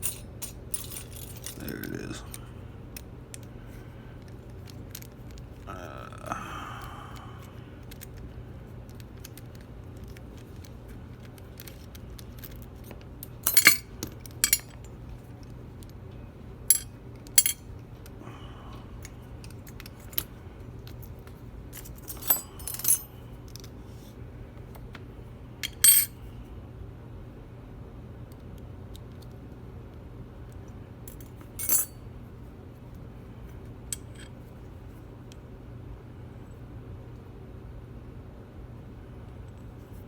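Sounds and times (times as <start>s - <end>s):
metallic clinks of small tools: 13.5s - 14.8s, 16.7s - 17.6s, 21.8s - 23.0s, 25.6s - 26.1s, 31.6s - 31.9s.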